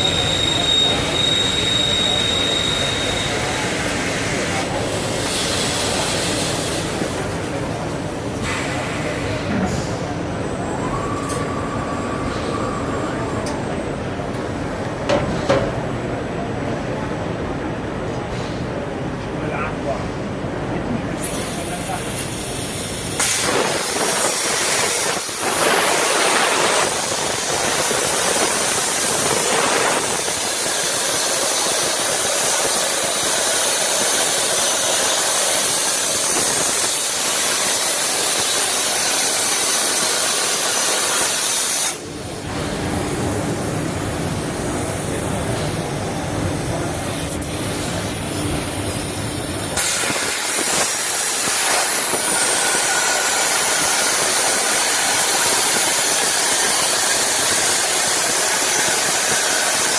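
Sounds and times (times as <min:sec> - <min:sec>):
faint high whistle: 0:00.0 - 0:03.7, 0:10.5 - 0:13.5
heavy machine hissing: 0:21.2 - 0:59.9.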